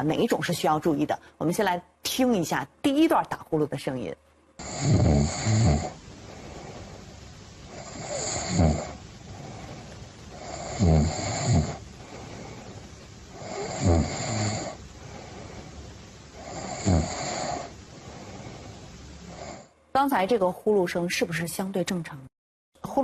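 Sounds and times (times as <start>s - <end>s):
person snoring: 4.6s - 19.7s.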